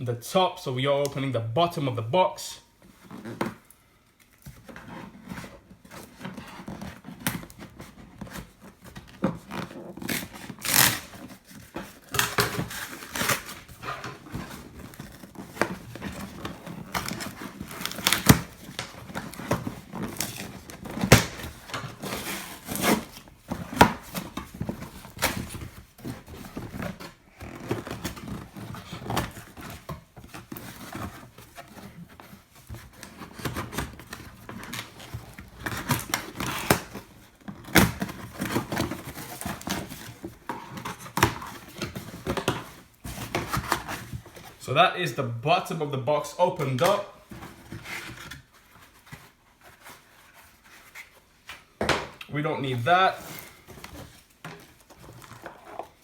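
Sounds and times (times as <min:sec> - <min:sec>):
scissors cutting cardboard: 0:04.5 - 0:44.6.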